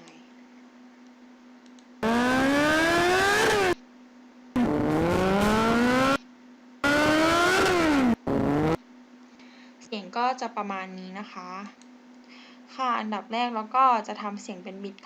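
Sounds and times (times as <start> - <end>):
motorcycle engine revving: 4.6 - 6.2, 6.8 - 8.8.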